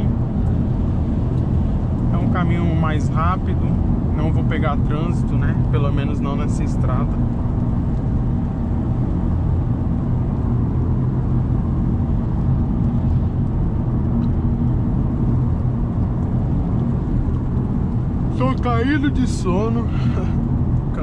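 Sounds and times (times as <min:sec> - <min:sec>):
car engine hum and road drone: 0:00.0 - 0:21.0.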